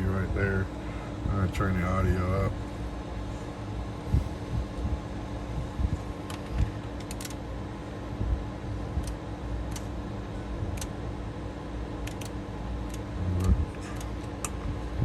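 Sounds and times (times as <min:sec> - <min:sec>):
steady low hum: 0:00.0 - 0:15.0
radio knobs and switches clicking: 0:06.0 - 0:07.4, 0:09.0 - 0:10.0, 0:10.6 - 0:11.0, 0:12.0 - 0:14.8.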